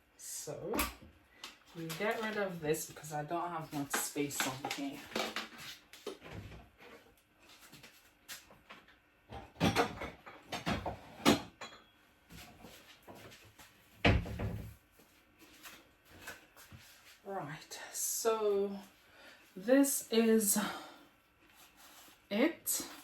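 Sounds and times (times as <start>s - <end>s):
kitchen knocks and bumps: 14.0s - 14.8s.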